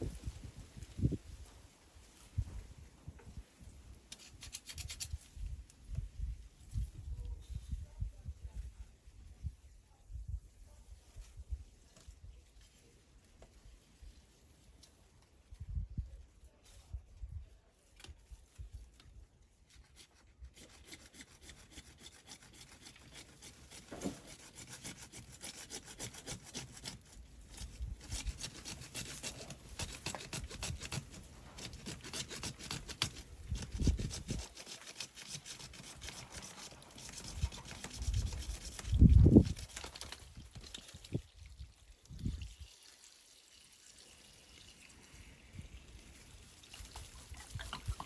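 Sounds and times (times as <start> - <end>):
saw rasping through plastic pipe: 19.7 - 40.0.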